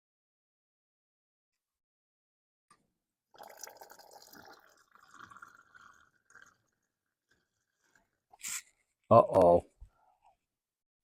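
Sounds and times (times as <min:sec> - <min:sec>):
fuel trickling and dripping into cup: 0:03.3 - 0:08.4.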